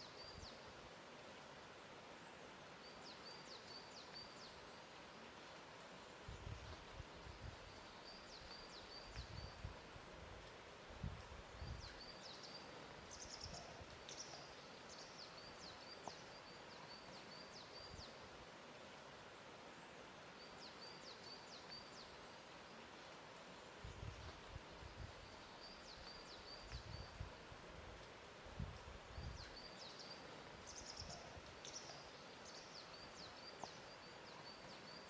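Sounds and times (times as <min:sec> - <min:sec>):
soft steady hiss: 0:00.0 - 0:35.0.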